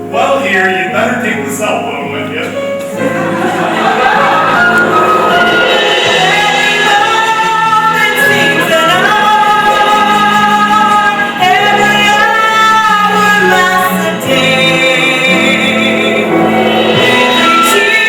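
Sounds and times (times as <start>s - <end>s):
musical accompaniment: 0.0s - 18.0s
woman singing long notes: 6.0s - 18.0s.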